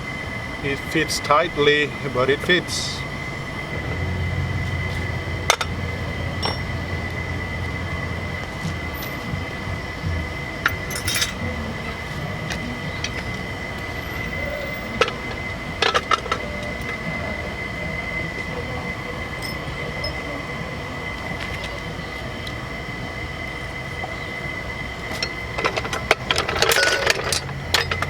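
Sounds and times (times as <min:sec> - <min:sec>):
constant high whine: 0:00.0 - 0:28.0
steady background hum: 0:00.0 - 0:28.0
sharp metallic clicks and clinks: 0:06.4 - 0:06.8, 0:10.6 - 0:11.5, 0:25.2 - 0:28.0.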